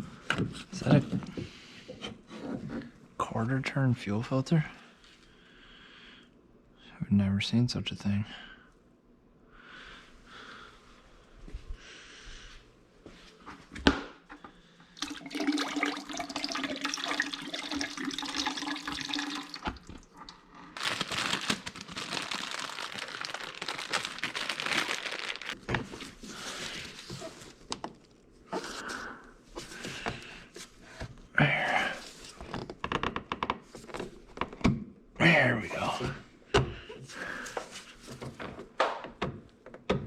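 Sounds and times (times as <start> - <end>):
liquid pouring and splashing: 15.0 - 20.5.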